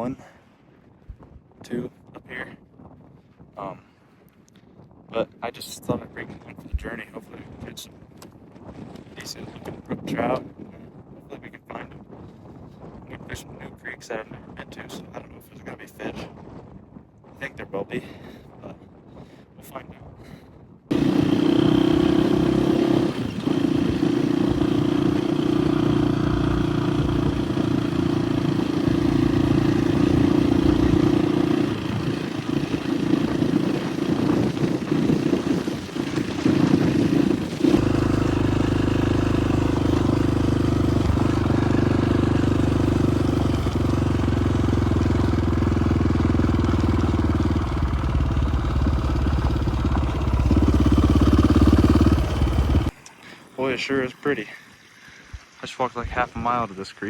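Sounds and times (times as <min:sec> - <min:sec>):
dirt bike engine running: 0:20.9 - 0:53.0
heavier low rumble: 0:23.4 - 0:53.0.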